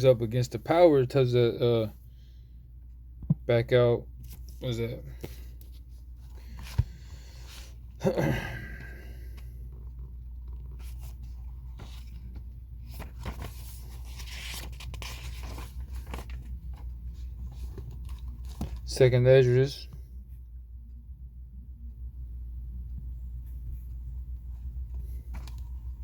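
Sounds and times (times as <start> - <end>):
low hum: 19.8 - 26.0.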